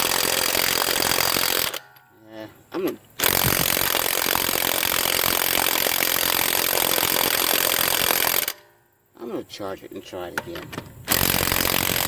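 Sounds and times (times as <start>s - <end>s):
impact wrench hammering: 0.0s - 2.1s, 3.2s - 8.8s, 10.4s - 12.0s.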